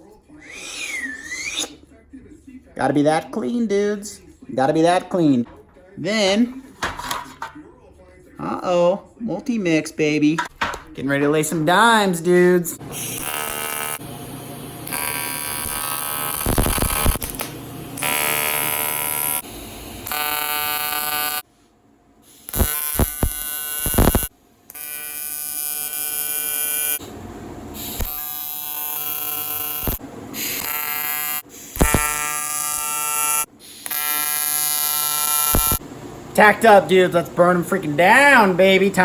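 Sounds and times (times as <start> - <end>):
welding arc buzzing: 12.8 - 21.4, 22.2 - 35.9.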